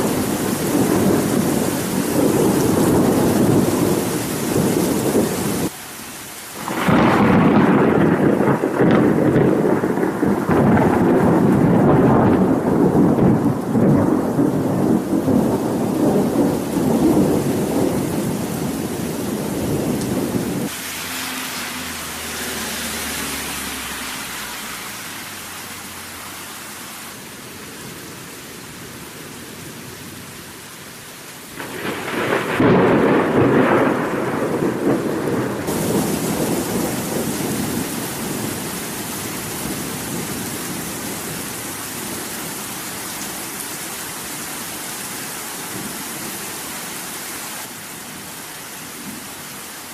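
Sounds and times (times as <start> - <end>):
rolling thunder: 0.0 - 5.7, 6.6 - 20.7, 31.6 - 41.5
rain: 0.0 - 49.9.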